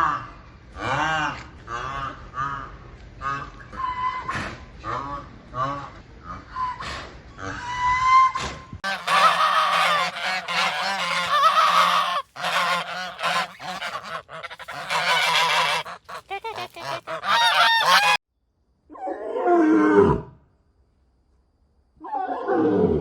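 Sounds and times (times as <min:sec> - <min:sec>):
geese honking: 0:08.8 - 0:18.2
long animal call sliding down: 0:08.9 - 0:18.2.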